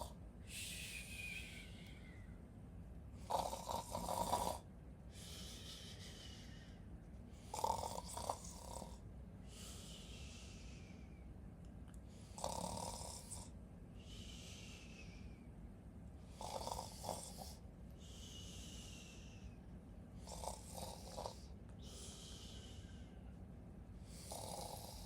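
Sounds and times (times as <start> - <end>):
breath out with faint whistle: 0.5 - 2.4
person snoring: 3.2 - 4.6, 7.4 - 9.0, 12.3 - 13.5, 16.3 - 19.4, 20.2 - 23.0, 24.1 - 25.0.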